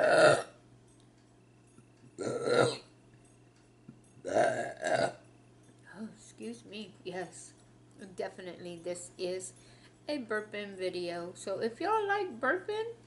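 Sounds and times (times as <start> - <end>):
woman burping: 0.0 - 0.6, 2.2 - 2.9, 4.3 - 5.2.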